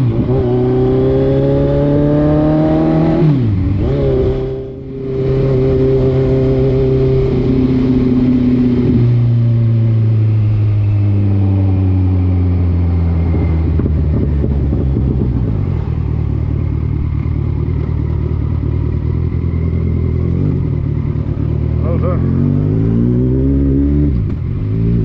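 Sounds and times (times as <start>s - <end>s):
vehicle engine running: 9.8s - 25.0s.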